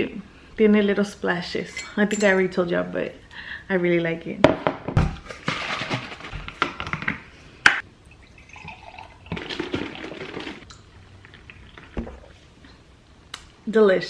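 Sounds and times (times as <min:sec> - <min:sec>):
liquid pouring into mug: 0:08.0 - 0:12.3.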